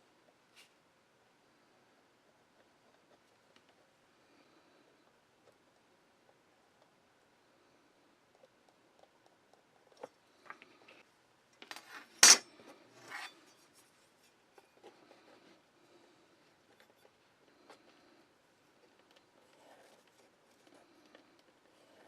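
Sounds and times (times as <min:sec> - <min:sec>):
metal tools clicking and scraping: 0:11.6 - 0:13.7.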